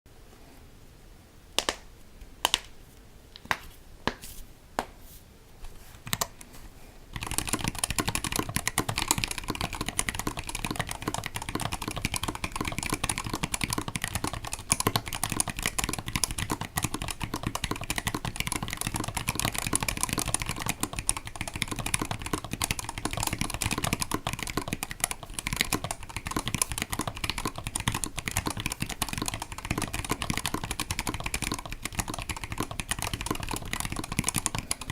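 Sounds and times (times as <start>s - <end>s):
mechanical keyboard typing: 7.2s - 34.9s.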